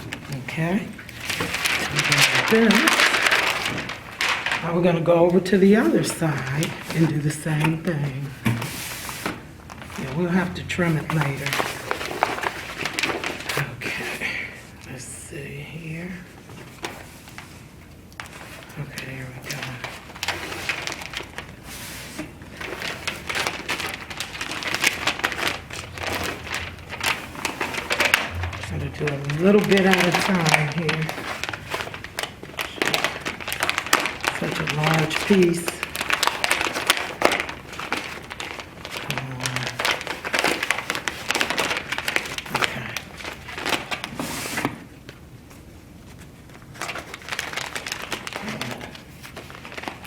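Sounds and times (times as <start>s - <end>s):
contact paper crinkling: 0.0s - 15.0s, 16.0s - 50.0s.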